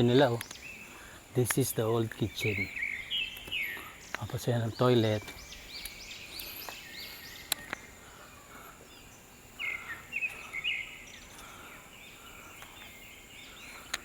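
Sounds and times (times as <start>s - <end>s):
birds chirping: 0.0s - 14.0s
sharp clicks: 0.3s - 0.6s, 1.4s - 1.7s.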